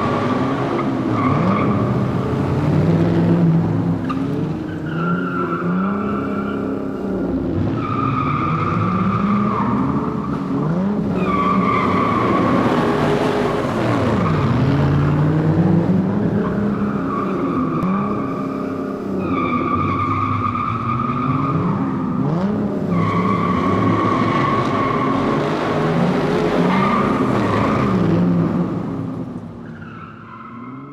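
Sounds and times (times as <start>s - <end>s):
race car engines revving: 0.0s - 30.9s.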